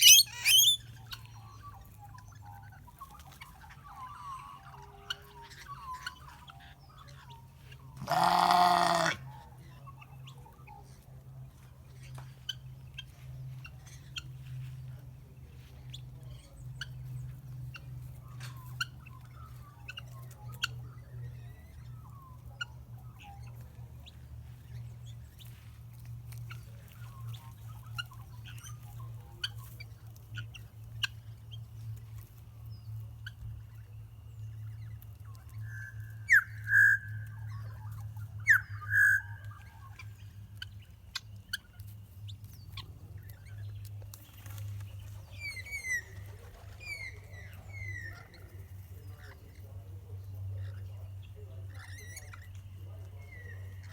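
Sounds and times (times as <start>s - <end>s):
parrot squawk: 0.0s - 0.8s, 8.0s - 9.2s.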